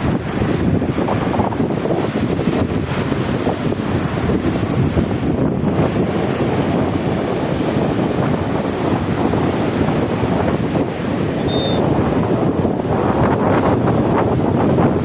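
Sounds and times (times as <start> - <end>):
sea waves washing: 0.0 - 15.0
wind buffeting microphone: 0.0 - 15.0
high squeak: 11.4 - 11.8.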